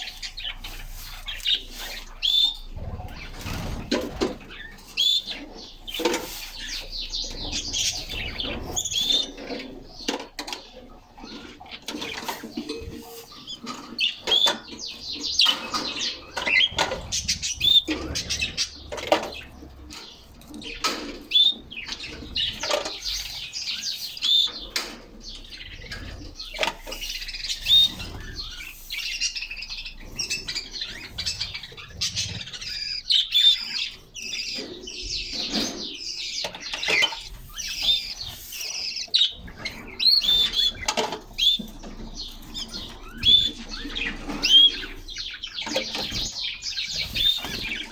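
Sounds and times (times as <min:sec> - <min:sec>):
canaries chirping and singing: 0:00.0 - 0:47.9
wing flutters: 0:00.7 - 0:05.0, 0:15.7 - 0:19.6.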